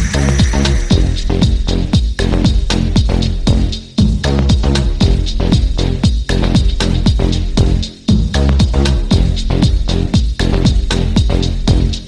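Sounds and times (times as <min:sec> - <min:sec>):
electronic dance music: 0:00.0 - 0:03.1.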